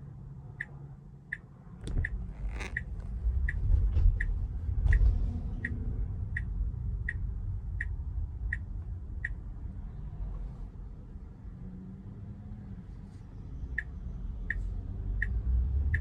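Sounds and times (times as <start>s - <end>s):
road noise rumble in car cabin: 0.0s - 16.0s
turn signal ticking: 0.3s - 9.7s, 13.7s - 16.0s.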